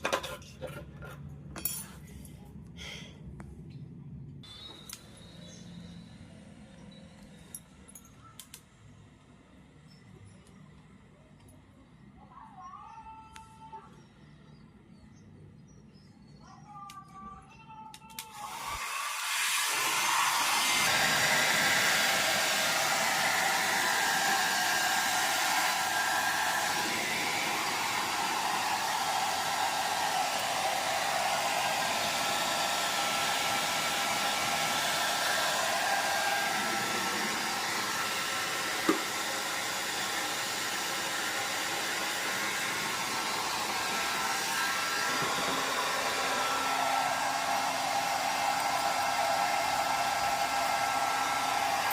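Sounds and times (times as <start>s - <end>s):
hair dryer blowing: 18.2s - 51.9s.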